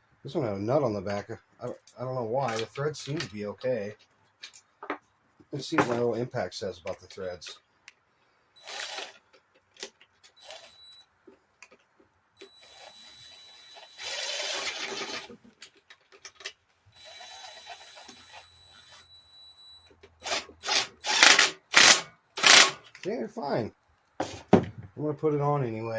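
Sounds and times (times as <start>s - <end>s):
cordless impact driver running: 8.6s - 9.2s, 12.6s - 15.3s, 17.0s - 19.0s, 20.2s - 22.8s.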